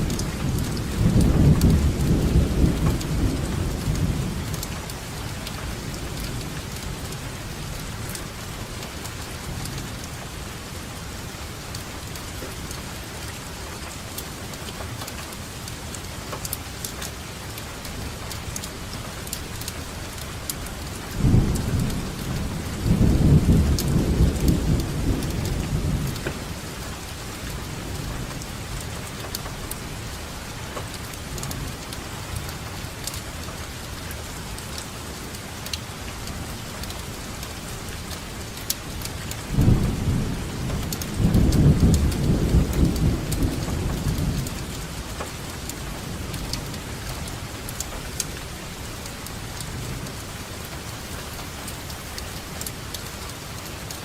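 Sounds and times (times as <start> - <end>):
thunder rumbling: 0.0 - 8.0, 21.2 - 30.5, 36.4 - 53.9
heavy rainfall: 0.0 - 54.0
rain drop ticks: 0.0 - 54.0.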